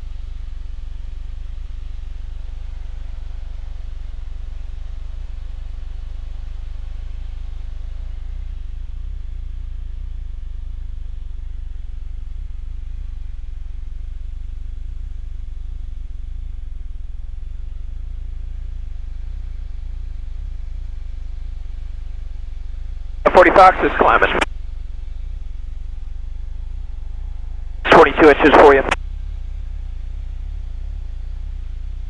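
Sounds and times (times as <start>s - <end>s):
propeller aircraft engine drone: 23.3s - 25.8s, 27.5s - 29.0s.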